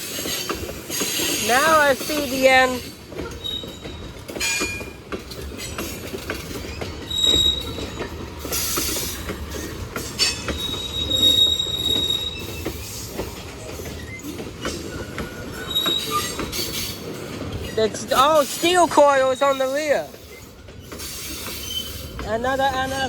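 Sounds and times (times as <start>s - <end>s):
train wheels clicking over rail joints: 0.0s - 23.0s
wheel squeal: 3.3s - 4.8s, 6.7s - 17.0s, 19.4s - 22.1s.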